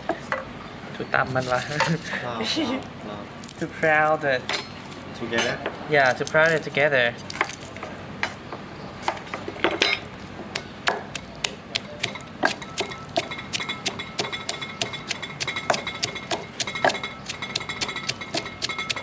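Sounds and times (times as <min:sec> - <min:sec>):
pestle pounding in mortar: 0:09.0 - 0:19.0.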